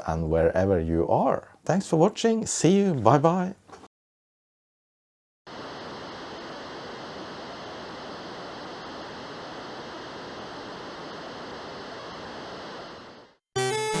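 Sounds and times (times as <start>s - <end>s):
static hiss: 5.5s - 14.0s.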